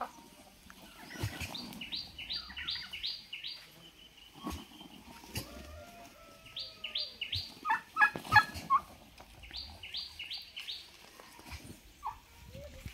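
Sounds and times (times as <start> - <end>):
turkey calling: 6.6 - 9.0, 9.8 - 12.3.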